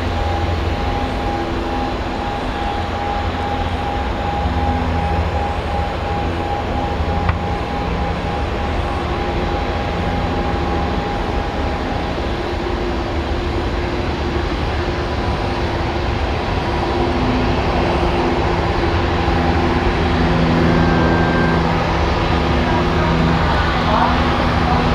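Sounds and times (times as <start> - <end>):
jet engine whining tones: 0.0 - 24.9
jet engines rumbling: 0.0 - 24.9.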